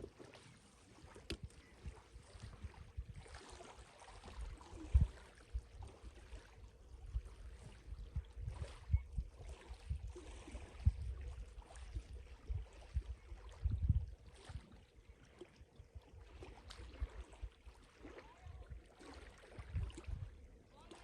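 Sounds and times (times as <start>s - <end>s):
faint water lapping: 0.0s - 21.0s
wind gusts on microphone: 1.4s - 3.4s, 4.4s - 5.9s, 6.9s - 14.2s, 19.6s - 20.4s.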